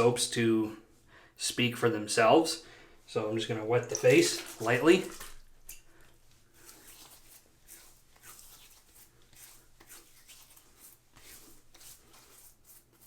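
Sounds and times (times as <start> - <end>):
water splashing on face: 3.8 - 5.5.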